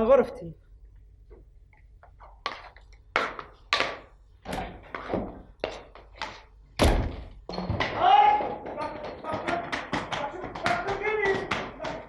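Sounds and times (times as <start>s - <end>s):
sharp knocks and thuds: 6.8s - 12.0s.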